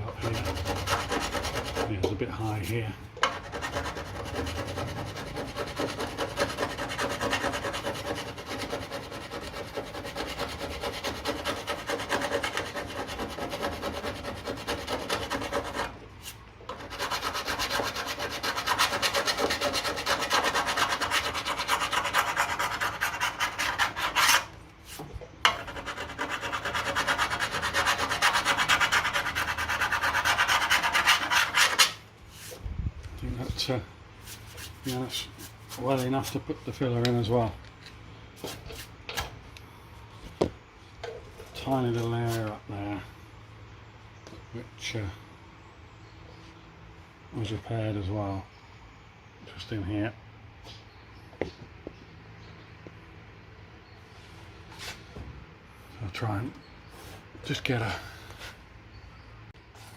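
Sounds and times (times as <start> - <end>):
file rasping on steel: 0.1 - 2.0, 3.2 - 16.0, 16.7 - 24.5, 25.5 - 32.0.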